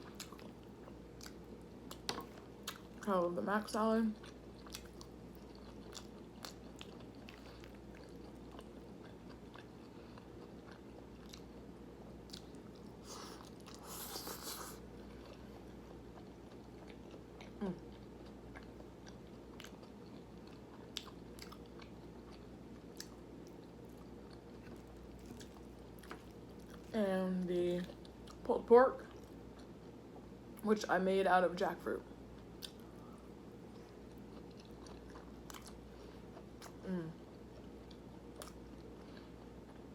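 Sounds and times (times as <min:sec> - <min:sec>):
chewing soft food: 0:00.0 - 0:03.1, 0:04.1 - 0:27.0, 0:27.8 - 0:30.6, 0:32.2 - 0:39.9.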